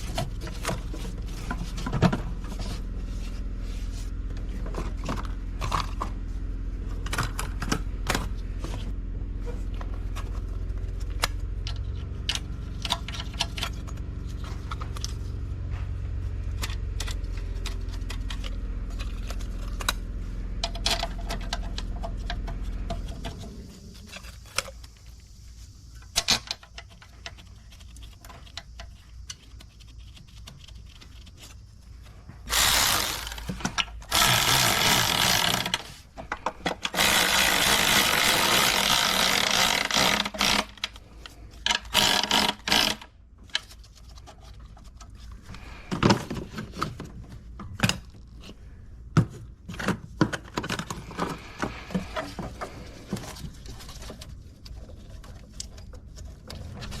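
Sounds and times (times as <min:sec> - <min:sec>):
tools clicking and knocking: 0:11.0 - 0:15.1, 0:20.6 - 0:24.7, 0:32.5 - 0:45.2
power tool running: 0:32.5 - 0:36.0, 0:36.8 - 0:40.9, 0:41.9 - 0:43.1.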